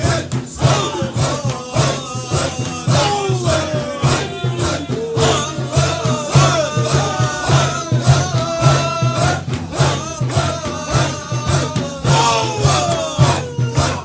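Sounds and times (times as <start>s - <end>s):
group chanting: 0.0s - 14.0s.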